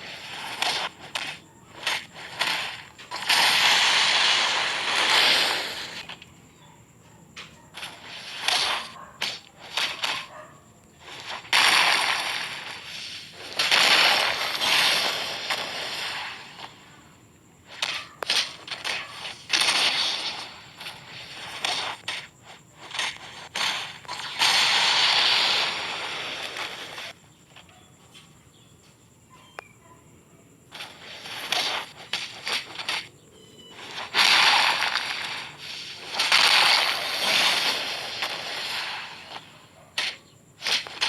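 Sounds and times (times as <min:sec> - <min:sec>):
fingers rubbing with hiss: 0:00.0 - 0:06.2, 0:07.8 - 0:17.0, 0:17.7 - 0:27.1.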